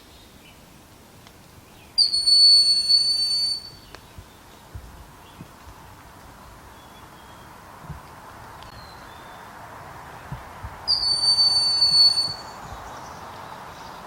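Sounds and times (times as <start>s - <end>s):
outdoor hiss: 0.0s - 14.0s
hawk whistling call: 2.0s - 3.9s, 10.9s - 12.6s.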